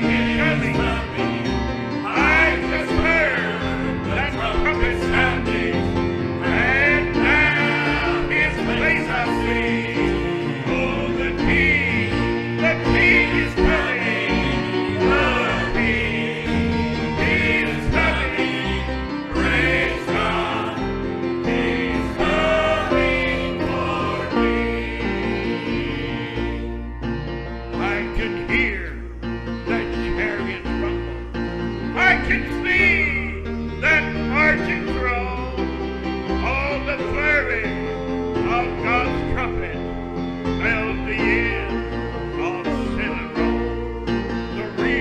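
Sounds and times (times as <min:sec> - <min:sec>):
voices singing with vibrato: 0:00.0 - 0:26.9, 0:40.6 - 0:45.0
instrumental accompaniment: 0:00.0 - 0:45.0.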